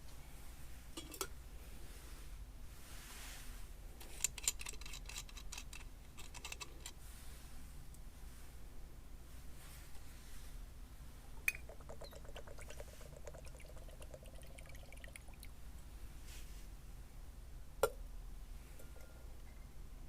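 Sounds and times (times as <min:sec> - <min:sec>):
liquid pouring into container: 0:11.3 - 0:15.6.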